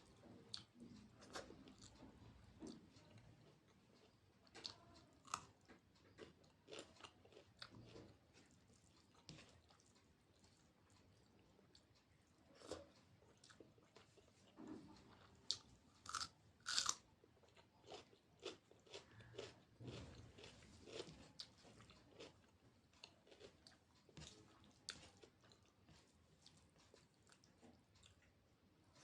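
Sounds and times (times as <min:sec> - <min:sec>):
person chewing crunchy food: 0:03.4 - 0:12.0, 0:12.6 - 0:28.2.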